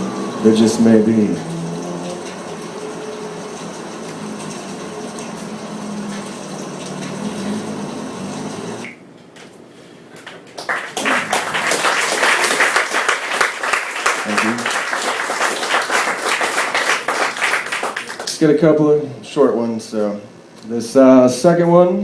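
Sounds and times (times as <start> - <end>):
audience applauding: 10.2 - 18.5.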